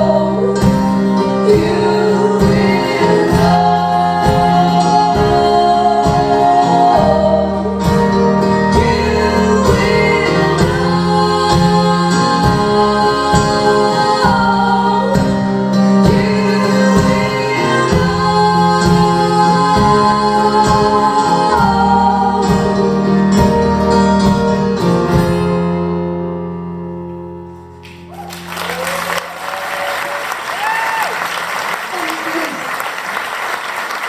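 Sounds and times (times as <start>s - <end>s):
person singing: 0.0s - 23.7s
audience applause and whoops: 27.9s - 34.0s.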